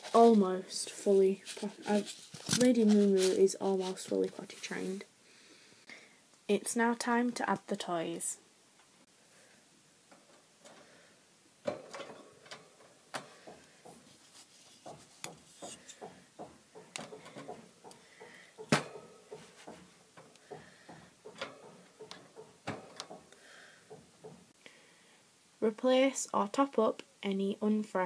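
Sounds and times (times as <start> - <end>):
toys knocking on plastic cage: 14.8 - 23.3.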